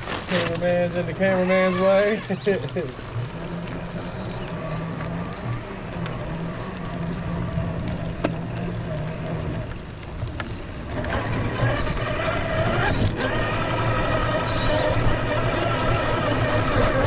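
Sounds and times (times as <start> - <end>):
toy car motor whining: 0.3 - 2.6, 10.9 - 17.0.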